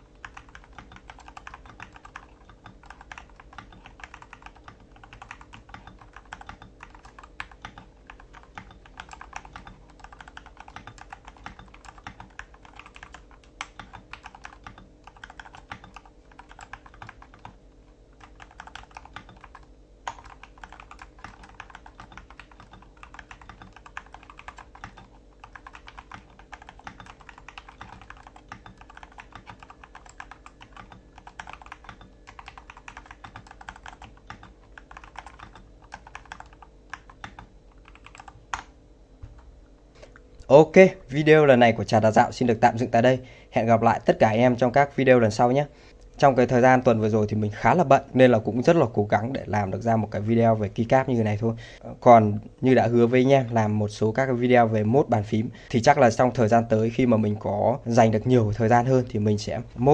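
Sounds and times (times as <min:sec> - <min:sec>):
mechanical keyboard typing: 0:00.2 - 0:17.6, 0:18.2 - 0:38.7.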